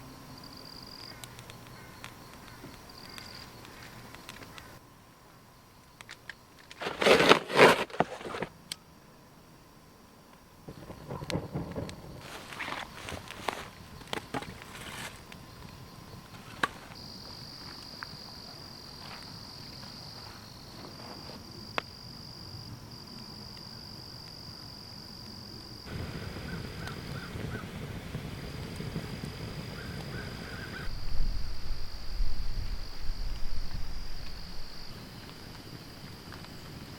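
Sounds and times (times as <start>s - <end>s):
insects droning: 0.0s - 36.9s
rustling: 6.7s - 8.5s, 10.8s - 15.3s.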